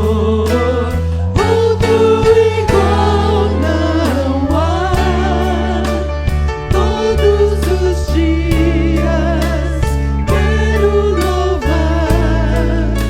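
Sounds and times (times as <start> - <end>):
bass line: 0.0 - 13.0
voices singing: 0.0 - 13.0
drum beat: 1.4 - 4.2.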